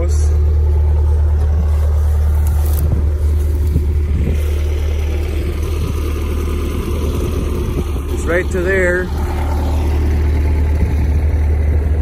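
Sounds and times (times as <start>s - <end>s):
loader engine droning: 0.0s - 12.0s.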